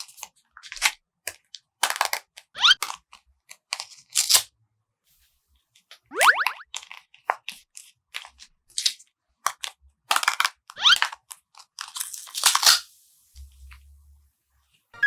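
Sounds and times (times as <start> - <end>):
rising whistle-like swoop: 6.1 - 6.6.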